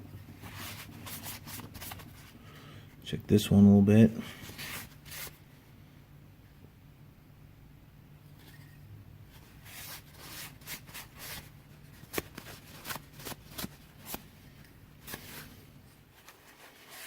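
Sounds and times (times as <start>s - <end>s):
faint low hum: 0.0s - 17.0s
rubbing and scraping: 16.2s - 17.0s.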